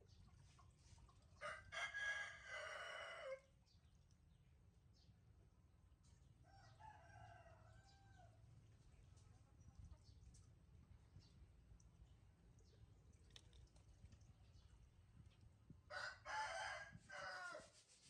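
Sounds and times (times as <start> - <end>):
rooster crowing: 1.4 - 3.4, 6.5 - 8.3, 15.9 - 17.6.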